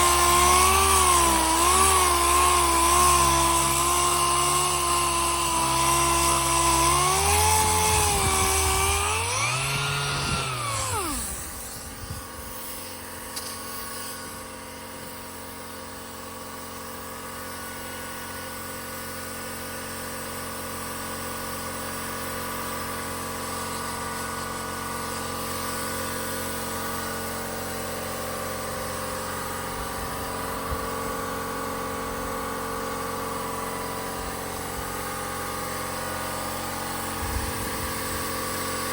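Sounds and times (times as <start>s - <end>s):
electric power tool running: 0.0s - 38.9s
steady mechanical hum: 5.6s - 17.7s.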